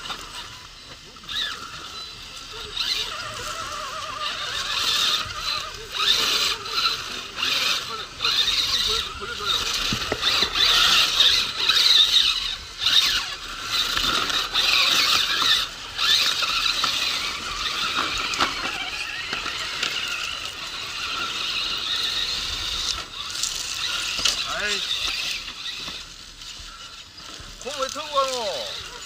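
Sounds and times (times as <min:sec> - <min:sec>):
electric motor whining: 0:00.0 - 0:29.0.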